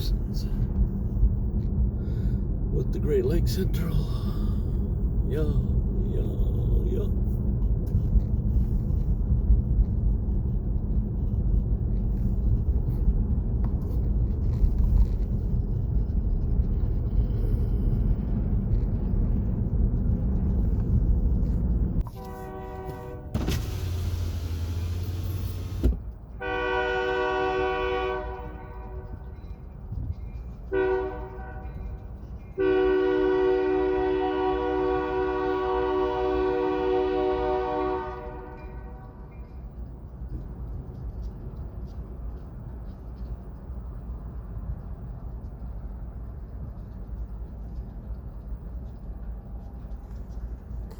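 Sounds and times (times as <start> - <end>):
steady low rumble: 0.0 - 26.5, 27.1 - 32.7, 34.6 - 50.9
locomotive horn blasts: 22.0 - 23.8, 26.4 - 29.3, 30.7 - 31.9, 32.6 - 39.2.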